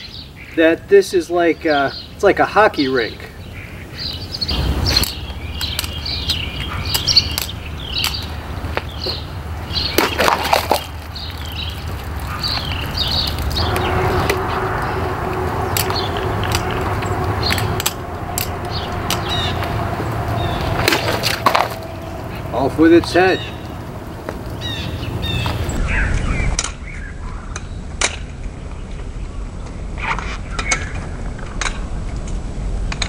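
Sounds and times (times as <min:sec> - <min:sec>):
small birds chirping: 0:00.0 - 0:27.9
steady hum: 0:12.0 - 0:25.8.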